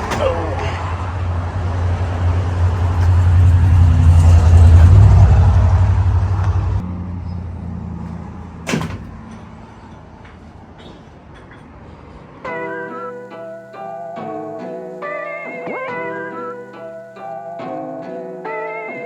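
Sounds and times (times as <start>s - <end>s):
vehicle whoosh: 0.0s - 9.6s
vehicle engine drone: 0.0s - 10.9s.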